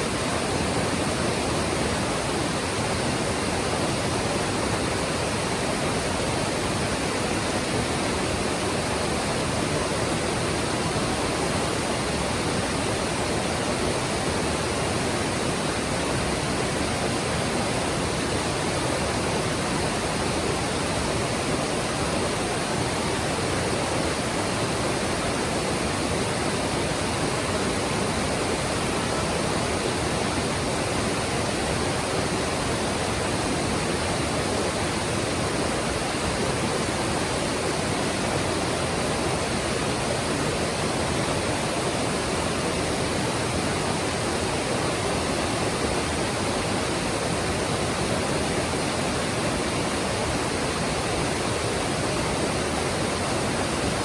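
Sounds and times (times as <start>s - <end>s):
stream rushing over rocks: 0.0s - 54.0s.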